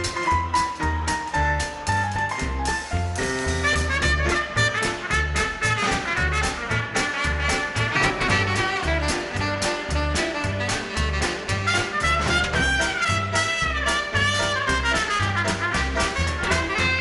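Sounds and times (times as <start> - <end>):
drums keeping time: 0.0 - 17.0
piano: 0.0 - 17.0
upright bass walking: 0.0 - 17.0
trumpet: 3.4 - 17.0
saxophone: 3.6 - 17.0.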